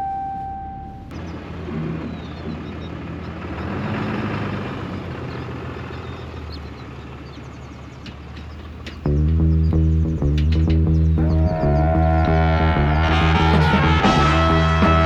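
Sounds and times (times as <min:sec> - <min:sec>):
low sustained tone: 0:00.0 - 0:01.1
diesel truck engine humming: 0:00.0 - 0:15.0
road noise: 0:00.0 - 0:15.0.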